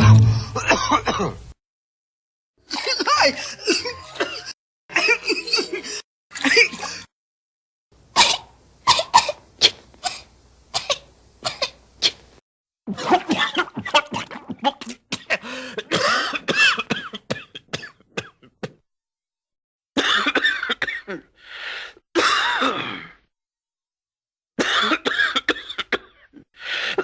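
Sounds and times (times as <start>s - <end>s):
cartoon coughing: 0.5s - 1.4s, 2.7s - 7.1s, 12.9s - 18.8s, 20.0s - 21.4s, 24.6s - 26.5s.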